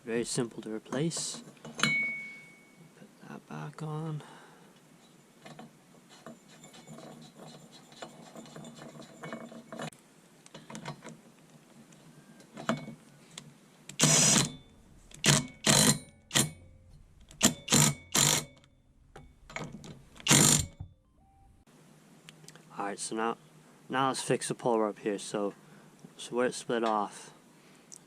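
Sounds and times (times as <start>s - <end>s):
ratchet wrench clicking: 13.9s - 16.6s, 17.2s - 18.6s, 20.2s - 20.8s
loud ratcheting bursts: 13.9s - 18.6s, 19.4s - 20.8s.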